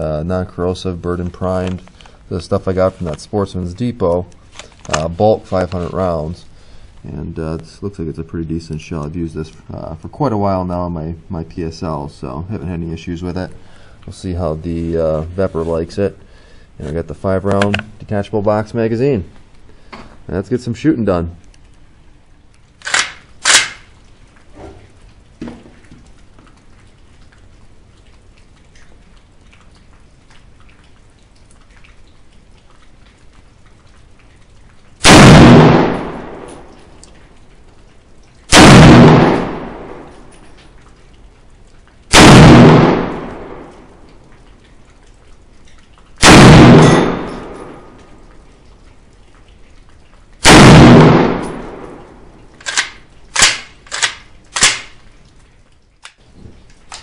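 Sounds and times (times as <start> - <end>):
rifle shots echoing: 22.8 - 23.9, 35.0 - 36.7, 38.5 - 40.3, 42.1 - 44.0, 46.2 - 48.0, 50.4 - 55.0.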